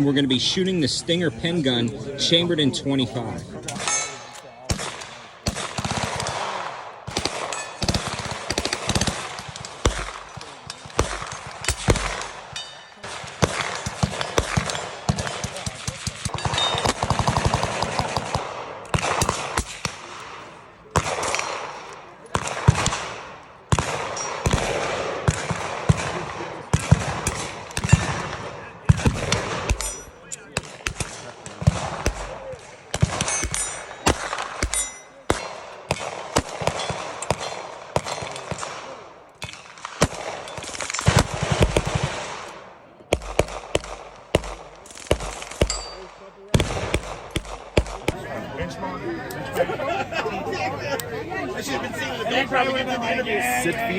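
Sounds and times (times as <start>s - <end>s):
steady background noise: 0.0s - 53.9s
single gunshots: 3.7s - 48.2s
automatic gunfire burst: 4.7s - 10.3s.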